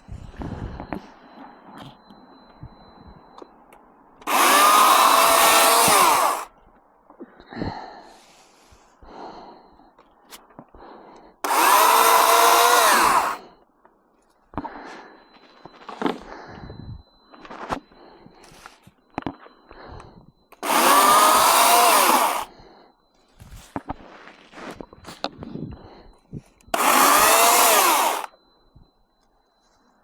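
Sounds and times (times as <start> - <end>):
electric chainsaw whining: 4.2 - 6.5, 11.4 - 13.4, 20.6 - 22.5, 26.8 - 28.3.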